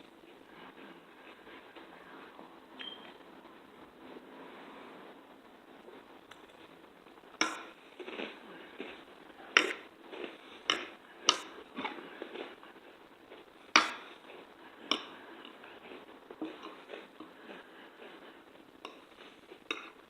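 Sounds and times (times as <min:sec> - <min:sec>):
eating sounds: 0:07.3 - 0:20.0.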